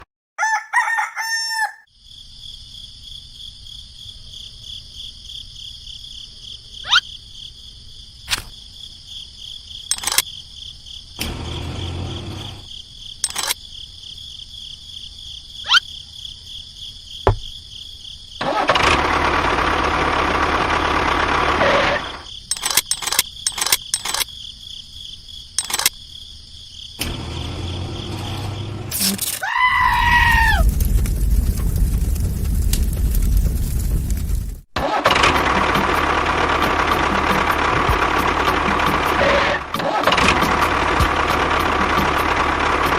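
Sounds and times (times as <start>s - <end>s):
insects droning: 1.5s - 18.7s, 19.3s - 34.5s
sharp clicks: 9.9s - 10.3s, 13.2s - 13.6s, 22.5s - 24.3s, 25.6s - 26.0s.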